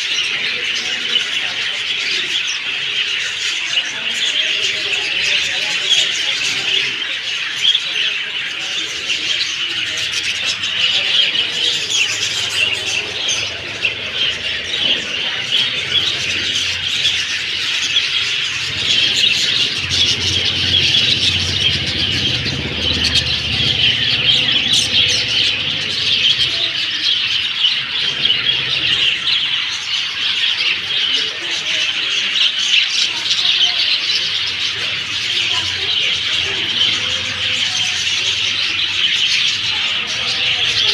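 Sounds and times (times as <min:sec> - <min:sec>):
flock of birds chirping: 0:00.0 - 0:40.9
low rumble: 0:13.1 - 0:26.9.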